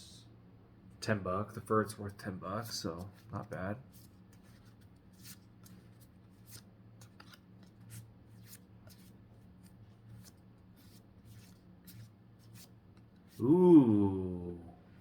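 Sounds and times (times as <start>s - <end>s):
low steady hum: 0.0s - 15.0s
trading cards clicking and rustling: 4.4s - 12.1s.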